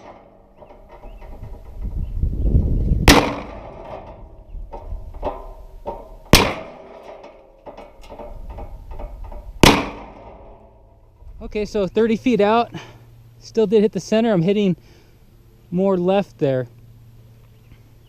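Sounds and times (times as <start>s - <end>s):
crossbow shots: 3.0s - 3.9s, 6.3s - 7.0s, 9.6s - 10.6s.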